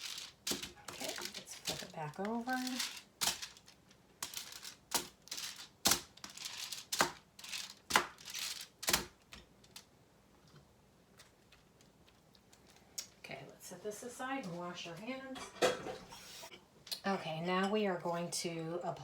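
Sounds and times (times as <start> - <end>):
chicken crinkling on foil: 0.0 - 9.9.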